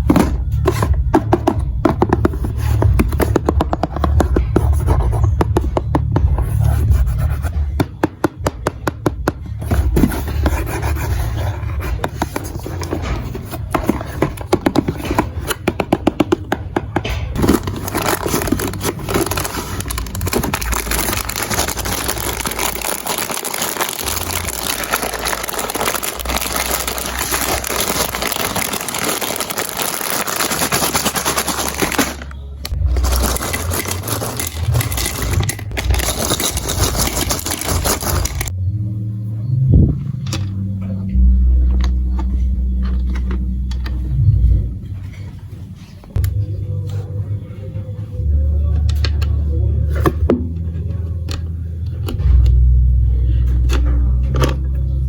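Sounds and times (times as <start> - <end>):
marbles rattling down a plastic run: 17.9 - 32.2, 32.9 - 38.5.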